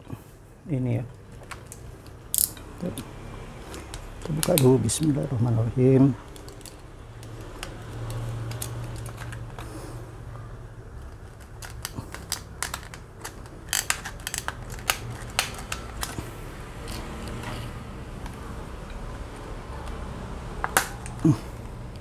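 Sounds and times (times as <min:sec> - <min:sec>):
packaging scraping and rustling: 0:06.3 - 0:09.8, 0:11.0 - 0:17.8
sharp clicks and snips: 0:11.0 - 0:16.2.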